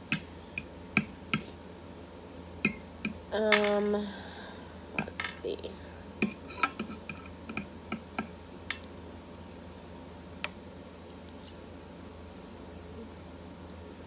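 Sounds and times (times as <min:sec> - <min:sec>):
low background hum: 0:00.0 - 0:14.0
utensil clinking against bowl: 0:00.1 - 0:01.5, 0:02.6 - 0:03.8, 0:05.0 - 0:05.4, 0:06.2 - 0:08.9.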